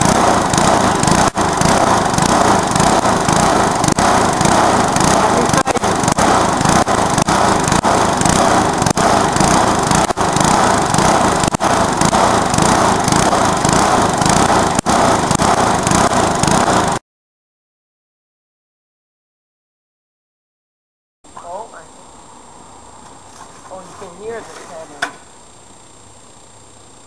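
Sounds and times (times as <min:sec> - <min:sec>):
lawnmower engine running loud: 0:00.0 - 0:17.0, 0:22.9 - 0:27.0.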